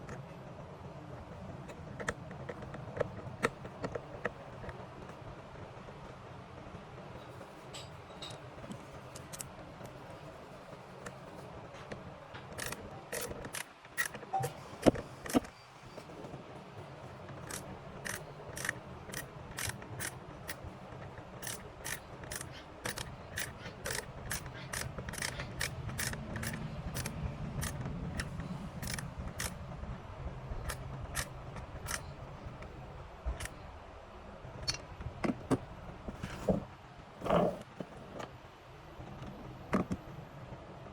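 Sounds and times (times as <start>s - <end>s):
hand tool clicking: 12.6s - 15.5s, 17.4s - 20.7s, 21.4s - 29.6s, 30.7s - 32.1s.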